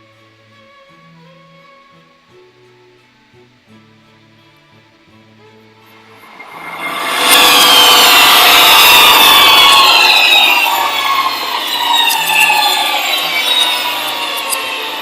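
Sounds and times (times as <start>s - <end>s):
power tool rasping and whining: 6.2s - 15.0s.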